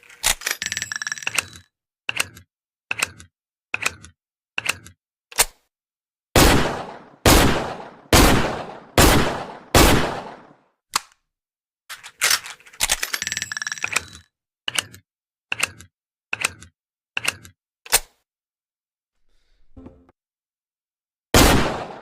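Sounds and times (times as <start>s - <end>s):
gunshots with echo: 6.4s - 10.6s, 21.4s - 22.0s.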